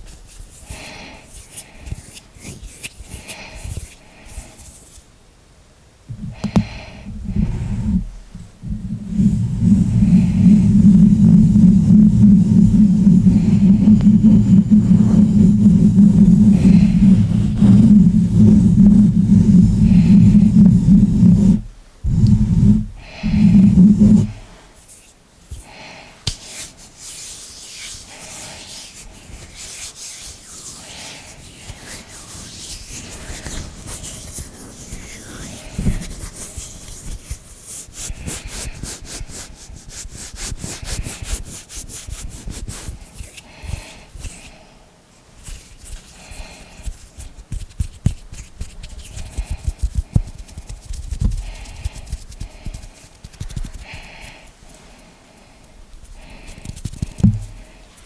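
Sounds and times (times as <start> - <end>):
hands rubbing together: 8.7 - 44.6, 45.4 - 54.1, 56.1 - 58.0.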